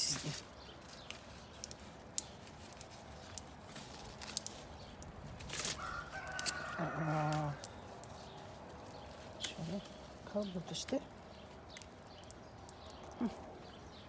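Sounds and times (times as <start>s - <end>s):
rooster crowing: 5.8s - 7.6s.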